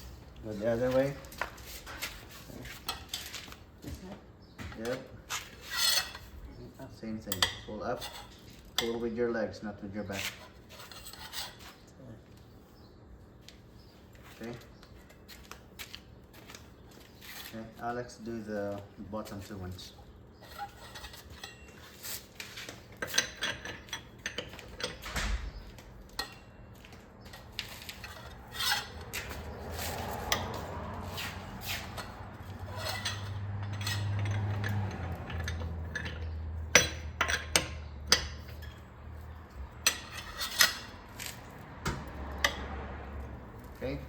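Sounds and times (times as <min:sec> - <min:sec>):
metal tools clinking: 0:20.5 - 0:22.0, 0:22.6 - 0:26.6, 0:31.7 - 0:41.5.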